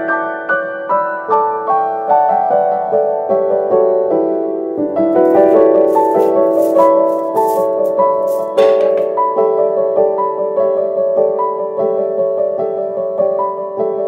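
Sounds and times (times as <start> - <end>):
gentle piano melody: 0.0 - 14.0
shaker-like rattling: 5.2 - 9.1.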